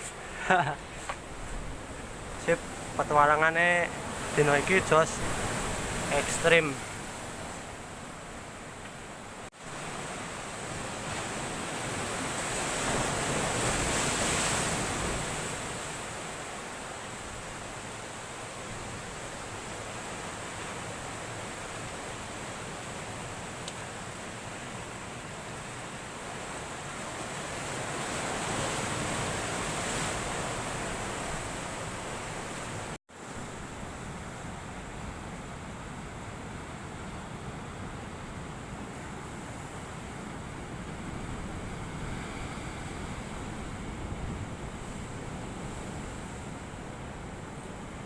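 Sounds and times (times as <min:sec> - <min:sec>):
waves breaking on rocky shore: 0:00.0 - 0:08.7, 0:09.6 - 0:35.1.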